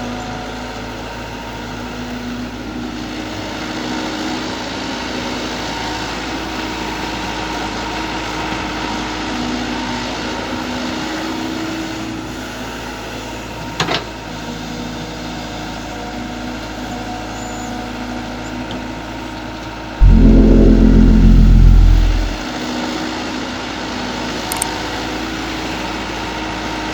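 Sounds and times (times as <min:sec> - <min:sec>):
loud low rumble: 0:20.0 - 0:22.4.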